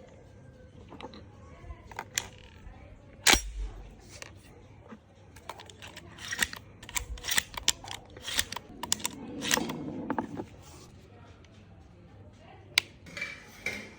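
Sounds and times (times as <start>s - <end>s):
metallic clicks of shotgun handling: 1.9s - 4.5s, 5.4s - 9.8s.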